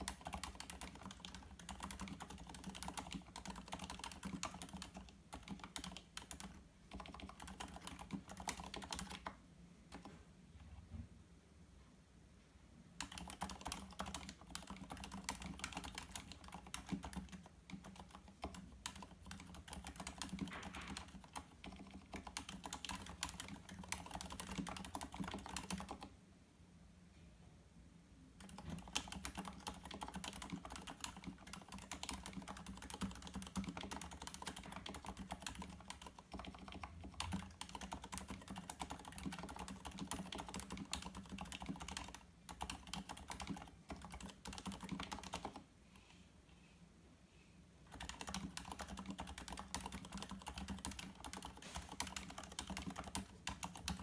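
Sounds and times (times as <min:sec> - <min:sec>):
fast typing on mechanical keyboard: 0:00.0 - 0:10.1, 0:13.0 - 0:26.1, 0:28.4 - 0:45.6, 0:47.9 - 0:54.0.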